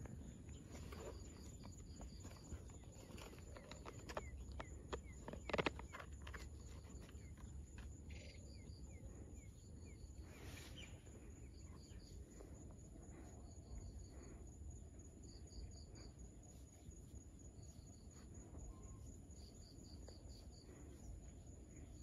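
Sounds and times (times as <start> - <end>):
insect chirping: 0.0 - 22.0.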